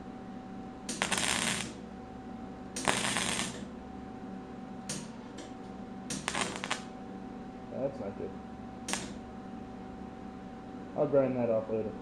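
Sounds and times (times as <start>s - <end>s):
steady hum: 0.0s - 12.0s
welder arc crackling: 0.9s - 1.8s, 2.8s - 3.7s, 4.9s - 6.9s, 8.8s - 9.3s.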